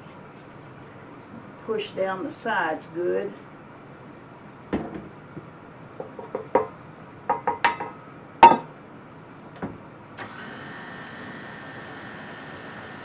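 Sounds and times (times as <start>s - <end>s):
spatula knocking on mixing bowl: 7.3s - 8.6s
electric mixer running: 10.2s - 13.0s.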